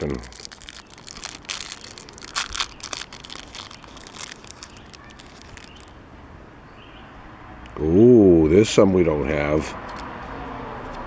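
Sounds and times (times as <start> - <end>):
plastic packaging crinkling: 0.0 - 6.0.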